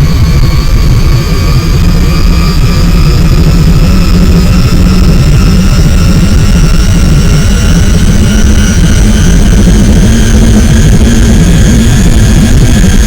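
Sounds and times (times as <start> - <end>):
jet engine low rumble: 0.0 - 13.0
turbine whine rising: 0.0 - 13.0.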